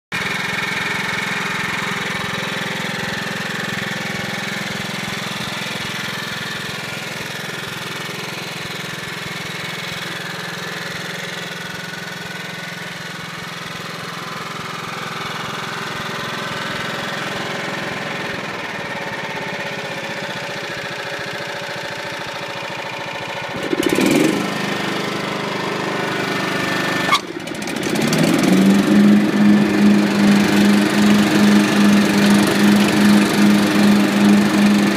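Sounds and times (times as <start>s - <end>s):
mower engine running: 0.1s - 34.9s.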